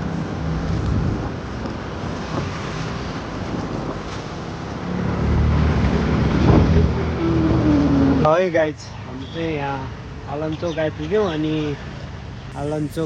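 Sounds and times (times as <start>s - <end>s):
wind across microphone: 0.0s - 8.3s
vehicle engine humming: 0.0s - 13.0s.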